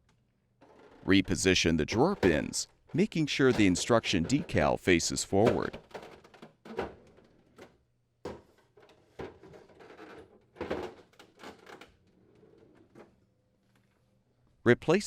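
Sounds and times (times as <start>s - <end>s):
bins sliding and scraping: 0.6s - 7.7s, 8.5s - 13.2s
drawer bins knocking: 0.7s - 7.4s.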